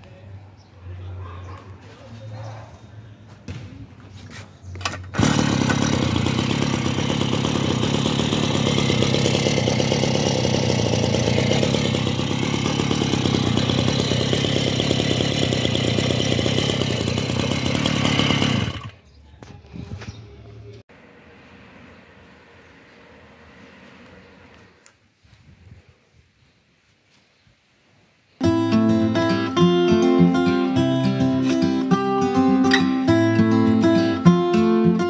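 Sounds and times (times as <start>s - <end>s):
lawn mower engine running: 4.8s - 19.0s, 28.4s - 35.0s.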